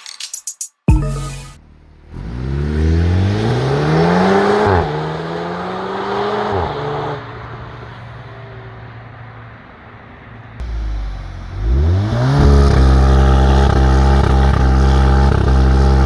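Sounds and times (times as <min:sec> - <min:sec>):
car engine accelerating hard: 0:01.6 - 0:07.6, 0:10.6 - 0:16.0.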